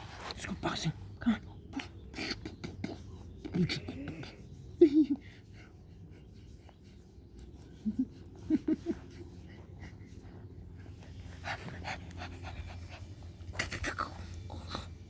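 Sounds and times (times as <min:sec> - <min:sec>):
puppy panting: 0:01.7 - 0:15.0.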